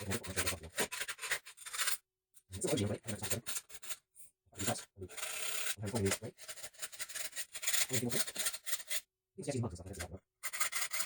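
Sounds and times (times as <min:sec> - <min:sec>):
file rasping on metal: 0:04.7 - 0:09.0, 0:10.4 - 0:11.0.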